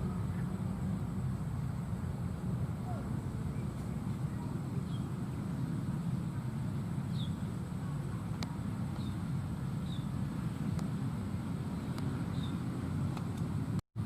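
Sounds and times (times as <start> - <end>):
low outdoor rumble: 0.0 - 14.0
small bird chirps: 7.1 - 7.5, 8.9 - 10.2, 11.8 - 12.7.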